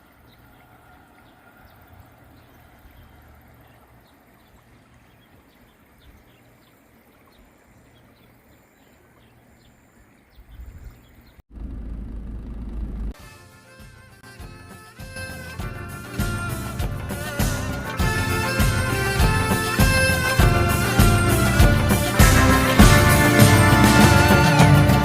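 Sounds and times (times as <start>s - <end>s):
low rumble on microphone: 10.5s - 13.2s
low steady hum: 11.5s - 13.2s.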